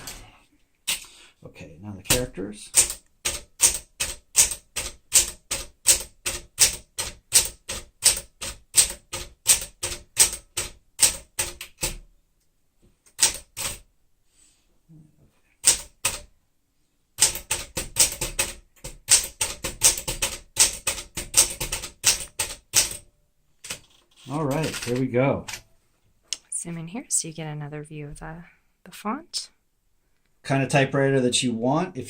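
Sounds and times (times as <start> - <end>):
manual typewriter keys striking: 2.1 - 12.1, 13.1 - 13.9, 15.6 - 16.3, 17.2 - 25.7.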